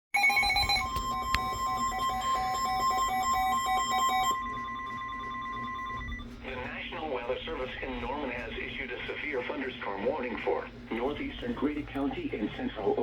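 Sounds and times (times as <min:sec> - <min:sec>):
steady high alert tone: 0:00.2 - 0:06.2
lower pulsing beep: 0:00.2 - 0:06.3.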